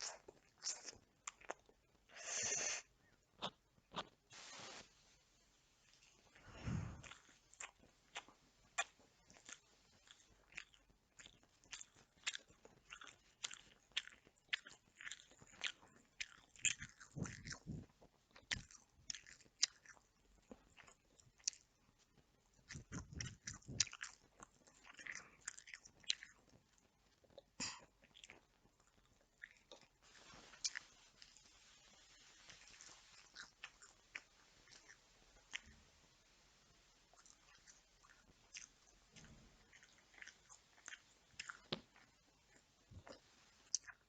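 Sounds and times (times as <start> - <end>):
person chewing food: 0.0 - 4.2, 5.9 - 35.9, 36.7 - 44.0.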